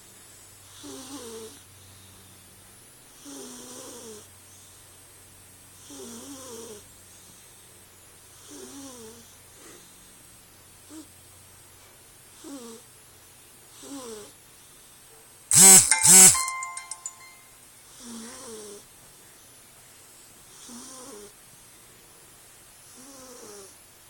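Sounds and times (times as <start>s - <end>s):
cat snoring: 0.2s - 4.8s, 5.7s - 10.2s, 10.9s - 11.1s, 12.3s - 12.9s, 13.7s - 14.8s, 17.9s - 18.9s, 20.5s - 21.4s, 22.8s - 23.8s.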